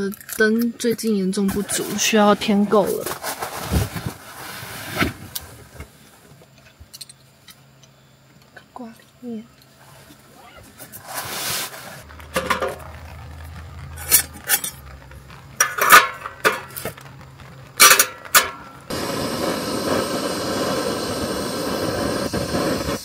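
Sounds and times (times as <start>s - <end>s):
steady hiss: 1.0s - 7.8s, 8.8s - 23.0s
metal camping gear clinking: 17.8s - 18.6s.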